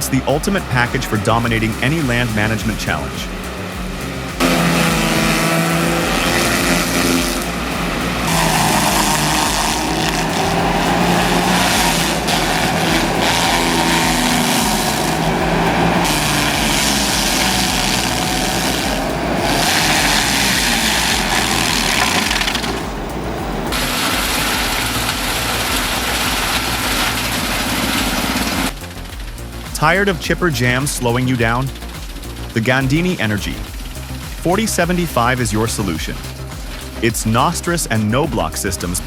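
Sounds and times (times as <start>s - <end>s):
diesel engine of heavy machinery: 0.0s - 29.6s.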